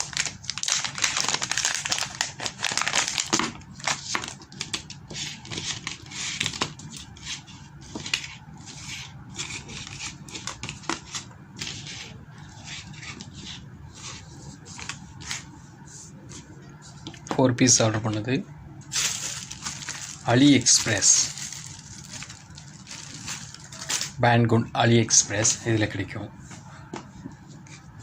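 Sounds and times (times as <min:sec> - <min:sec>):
plastic packaging rustling: 0:00.0 - 0:06.9, 0:18.9 - 0:24.2.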